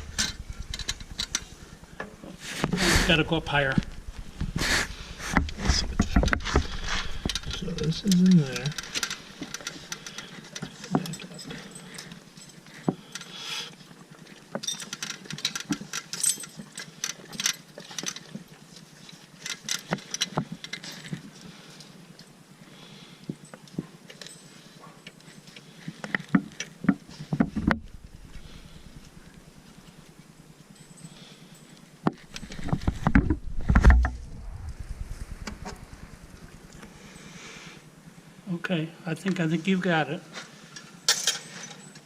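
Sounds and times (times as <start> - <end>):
metal tools clicking and clinking: 6.7 - 13.3, 14.6 - 18.3, 40.7 - 42.0.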